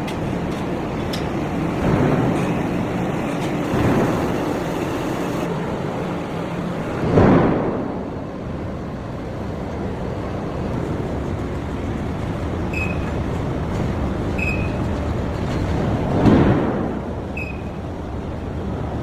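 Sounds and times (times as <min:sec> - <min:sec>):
heavy forge machinery running: 0:00.0 - 0:19.0
loud machinery surge: 0:01.8 - 0:05.5.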